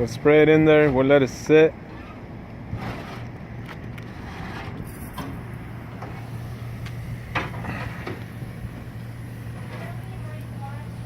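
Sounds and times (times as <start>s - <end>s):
steady low hum: 0.0s - 11.0s
pump sprayer spraying: 4.9s - 11.0s.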